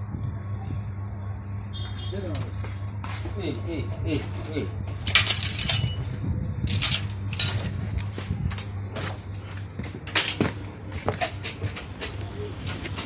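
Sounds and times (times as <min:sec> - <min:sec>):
metal tools clinking: 0:05.0 - 0:07.8, 0:08.5 - 0:08.7.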